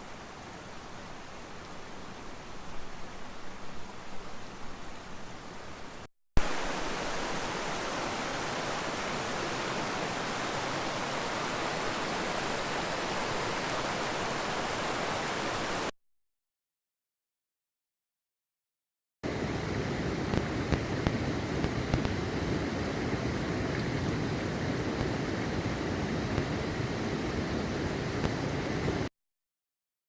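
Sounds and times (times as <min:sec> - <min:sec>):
waterfall rushing: 0:06.4 - 0:15.9, 0:19.3 - 0:29.1.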